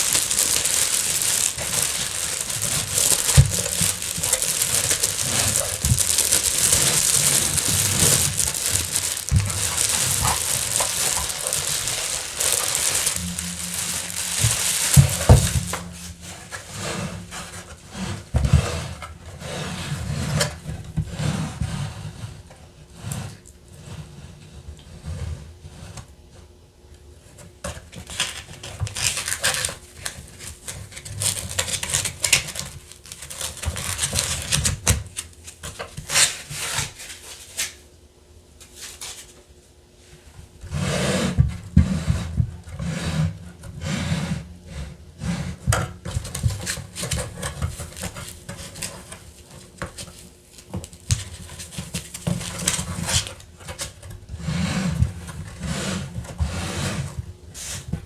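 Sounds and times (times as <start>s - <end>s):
rustling and scraping of packaging: 0.0s - 21.7s, 28.0s - 37.8s, 45.2s - 58.0s.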